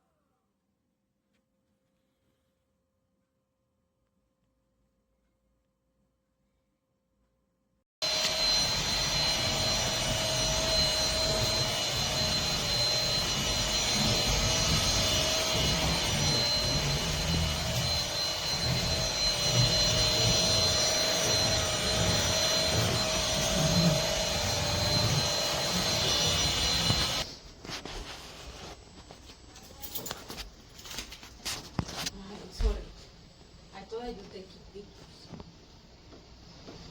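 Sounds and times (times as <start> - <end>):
vacuum cleaner whine: 8.0 - 29.4.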